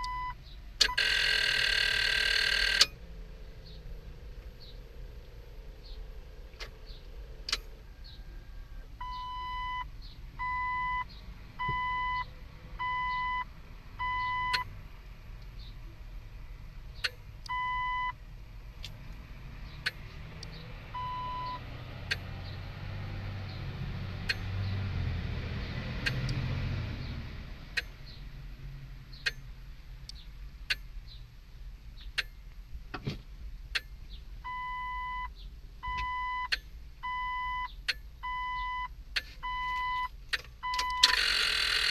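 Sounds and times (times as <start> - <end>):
dashboard warning chime beeping: 0.0 - 3.0, 8.2 - 14.7, 17.0 - 18.2, 20.9 - 22.3, 34.4 - 41.9
sharp clicks inside dashboard: 19.7 - 20.6, 22.0 - 22.3, 24.2 - 24.5, 26.0 - 26.4, 27.7 - 28.1, 29.1 - 31.2, 32.0 - 34.2, 35.3 - 36.8, 37.6 - 41.9.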